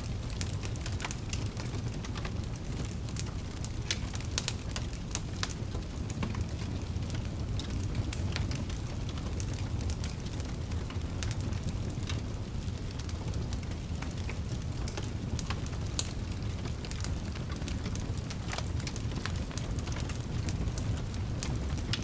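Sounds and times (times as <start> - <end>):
rumble of flames: 0.0 - 22.0
wood fire crackling: 0.0 - 22.0.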